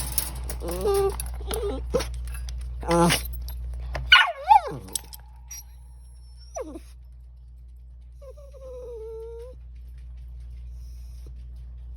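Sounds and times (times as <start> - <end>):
small dog crying and whining: 0.6 - 2.1, 4.1 - 6.9, 8.2 - 9.6.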